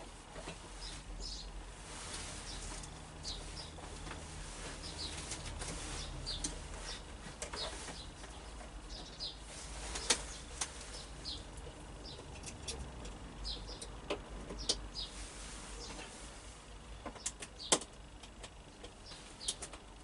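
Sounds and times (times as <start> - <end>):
low steady hum: 0.0 - 20.0
small birds chirping: 0.7 - 16.1, 17.0 - 19.8
clicks and knocks of tools: 11.6 - 14.8.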